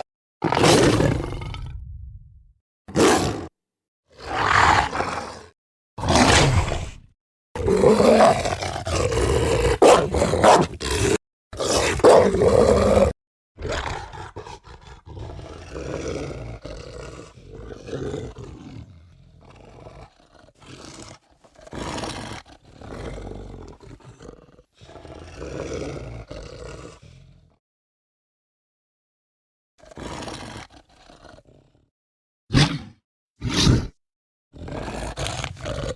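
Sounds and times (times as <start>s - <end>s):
creature growls and snarls: 0.0s - 27.6s, 29.8s - 31.9s, 32.5s - 34.0s, 34.6s - 35.9s
creature roaring: 0.4s - 2.3s, 4.1s - 21.0s, 32.5s - 34.0s, 34.6s - 35.9s.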